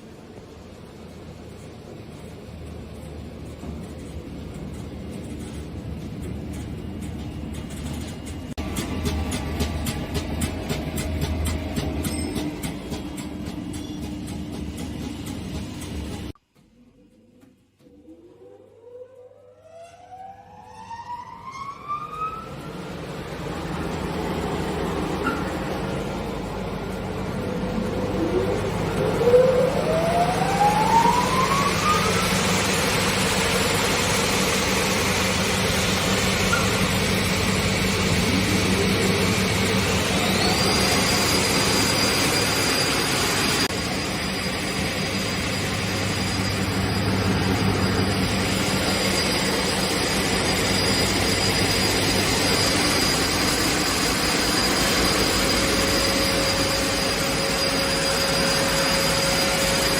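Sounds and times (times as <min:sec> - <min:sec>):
higher motor whine: 0:17.8 - 0:59.9
motor whine rising: 0:17.9 - 0:59.9
planer sander machine humming: 0:22.9 - 0:59.9.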